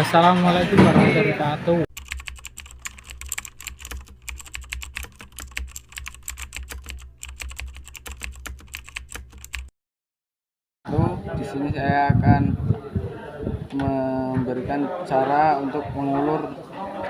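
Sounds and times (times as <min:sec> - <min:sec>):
rapid irregular clicking: 0:01.9 - 0:09.7.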